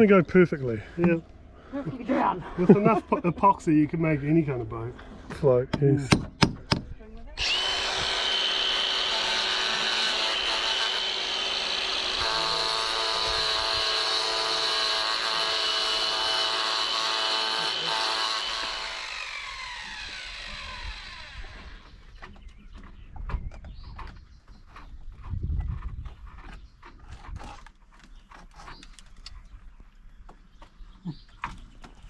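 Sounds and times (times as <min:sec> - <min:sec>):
power tool whining: 0:07.4 - 0:22.0.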